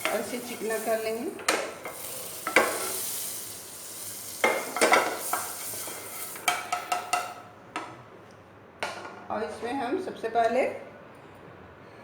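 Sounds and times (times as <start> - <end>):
butter sizzling in a frying pan: 0.0 - 7.5
utensil knocking and scraping pan: 1.4 - 3.0, 4.4 - 7.4.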